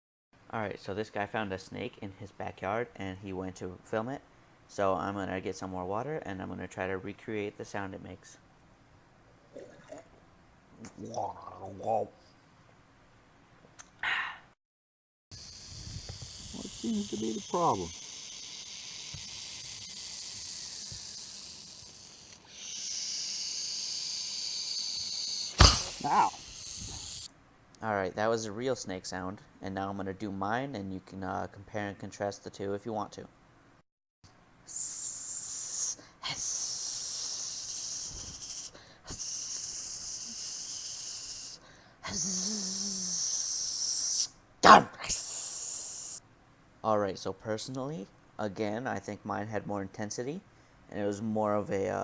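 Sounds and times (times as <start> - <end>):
snake hissing: 15.4 - 27.3, 34.7 - 44.3, 45.0 - 46.2.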